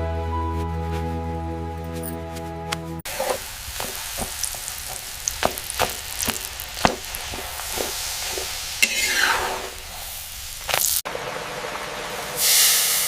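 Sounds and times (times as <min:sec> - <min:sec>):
soft music: 0:00.0 - 0:03.0
spoon scraping against pan: 0:03.1 - 0:09.8
food sizzling in a pan: 0:03.1 - 0:11.0, 0:12.4 - 0:13.0.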